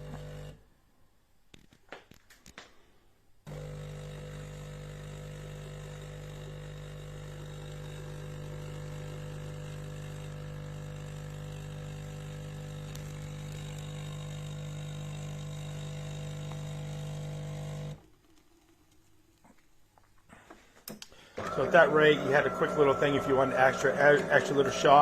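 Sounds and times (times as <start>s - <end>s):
espresso machine pump hum: 0.0s - 0.6s, 3.5s - 18.4s, 21.4s - 25.0s.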